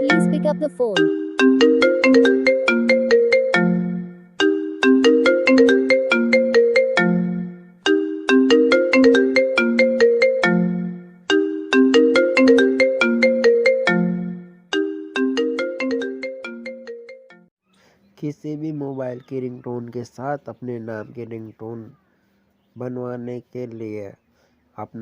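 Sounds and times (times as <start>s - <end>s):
mobile phone ringtone melody: 0.0s - 17.5s.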